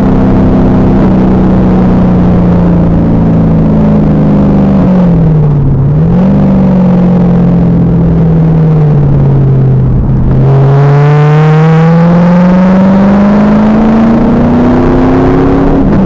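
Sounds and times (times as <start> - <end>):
loud car engine accelerating: 0.0 - 16.0.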